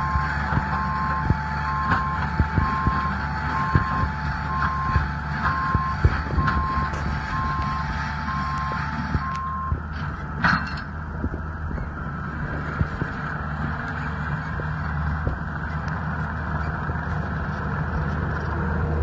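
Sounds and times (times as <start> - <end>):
reversing alarm beep: 0.0 - 9.8
diesel engine running: 0.0 - 19.0.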